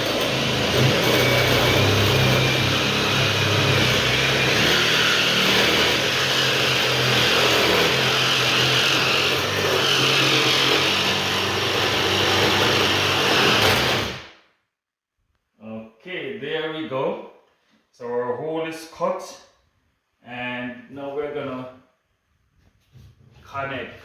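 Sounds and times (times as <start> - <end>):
power drill running under load: 0.0 - 14.3.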